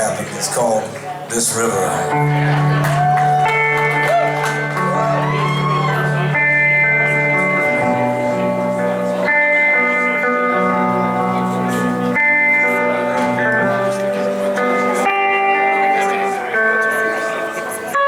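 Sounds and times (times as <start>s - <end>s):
guitars playing ringing chords: 1.3s - 18.0s.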